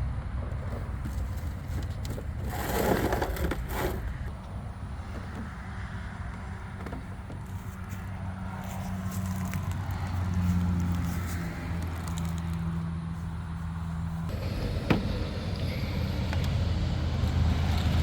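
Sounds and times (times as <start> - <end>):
small rocks clicking: 9.1 - 12.7.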